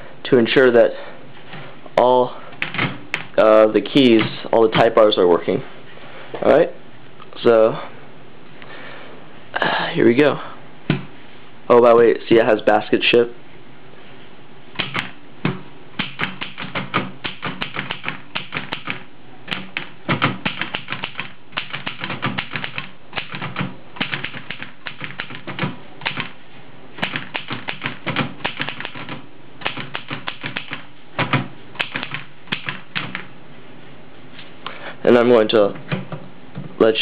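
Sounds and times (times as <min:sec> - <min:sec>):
manual typewriter clacking: 0:02.6 - 0:03.4, 0:14.8 - 0:26.4, 0:27.0 - 0:33.3.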